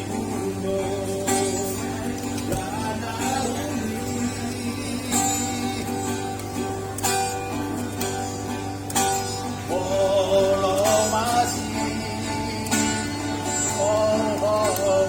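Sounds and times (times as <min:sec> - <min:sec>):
man singing: 0:00.0 - 0:06.4, 0:09.7 - 0:15.0
guitar plucked and strummed: 0:00.0 - 0:15.0.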